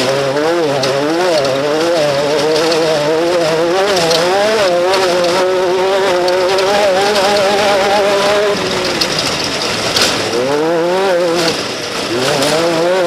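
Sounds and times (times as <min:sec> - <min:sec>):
race vehicle engine revving: 0:00.0 - 0:13.0.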